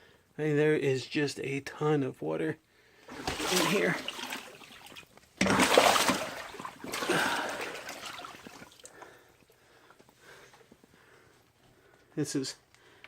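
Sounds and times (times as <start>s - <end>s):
water splashing and sloshing: 3.1s - 9.1s.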